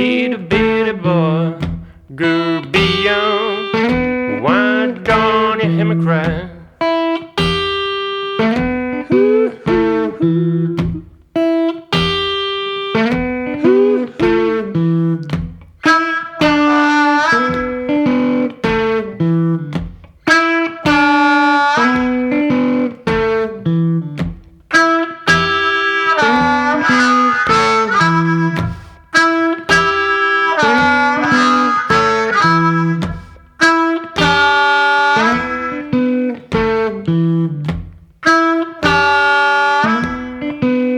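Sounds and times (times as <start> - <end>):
blues guitar riff: 0.0 - 40.9
harmonica: 0.0 - 40.9.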